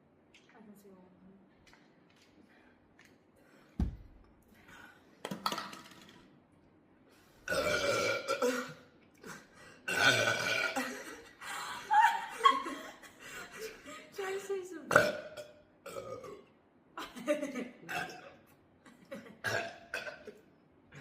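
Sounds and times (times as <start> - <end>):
low thump: 3.8 - 4.2
person burping: 7.5 - 11.2, 14.9 - 16.5, 17.9 - 18.4, 19.4 - 20.4.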